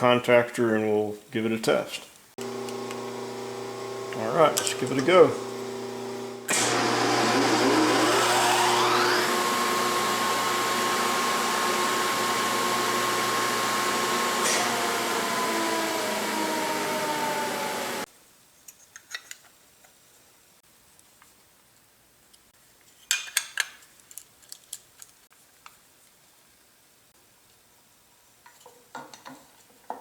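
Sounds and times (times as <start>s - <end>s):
electric motor whine: 2.4s - 18.1s.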